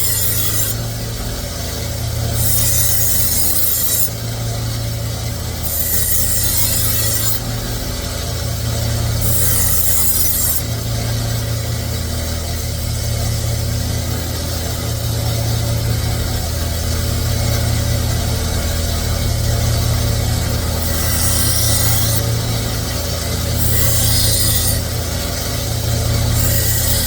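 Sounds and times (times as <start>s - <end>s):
knife grinding on sharpener: 0.0s - 1.0s, 2.3s - 4.2s, 5.6s - 7.6s, 9.1s - 10.7s, 20.5s - 27.0s.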